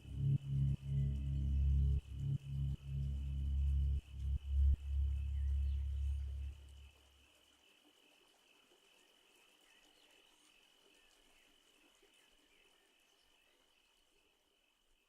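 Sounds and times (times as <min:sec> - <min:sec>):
faint high trill: 0:00.0 - 0:06.8.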